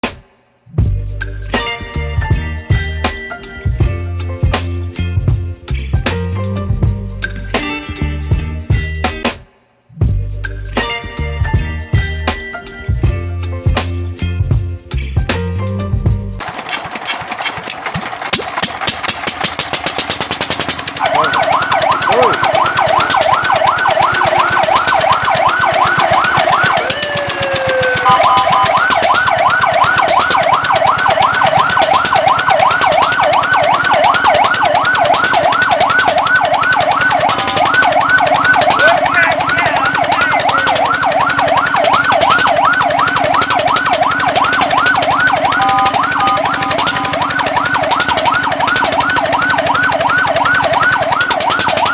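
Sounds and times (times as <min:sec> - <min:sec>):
fast mechanical rattle: 0:16.4 - 0:51.9
fire truck siren yelping: 0:16.4 - 0:51.9.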